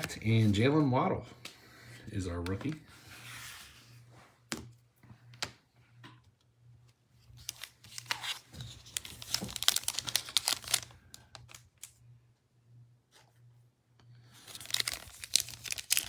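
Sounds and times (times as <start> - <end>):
foil wrapper crinkling and tearing: 7.4 - 12.0, 14.3 - 16.0.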